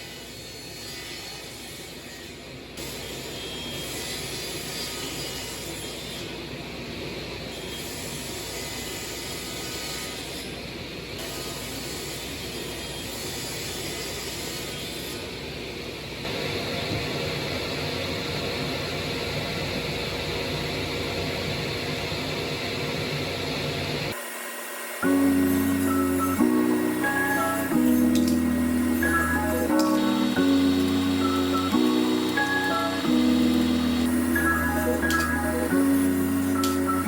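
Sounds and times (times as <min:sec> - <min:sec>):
steady machine tone: 0:20.6 - 0:37.0
machine running: 0:20.7 - 0:37.0.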